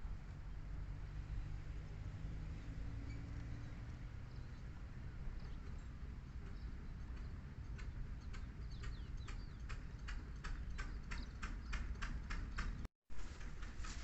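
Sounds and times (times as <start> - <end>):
sharp ticks: 7.1 - 12.8.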